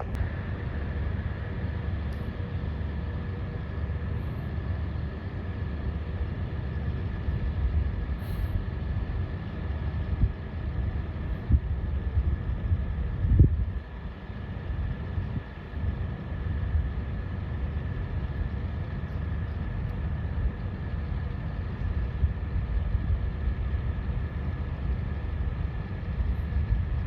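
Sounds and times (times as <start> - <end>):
faint steady whine: 0.0 - 27.0
machinery engine rumble: 0.0 - 27.0.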